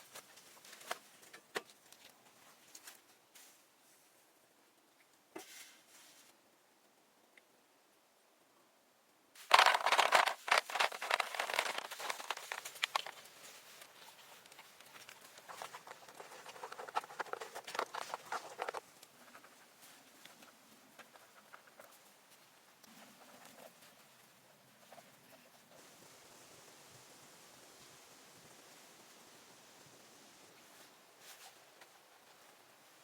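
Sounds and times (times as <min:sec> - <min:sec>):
dry leaves rustling: 0:09.4 - 0:22.0.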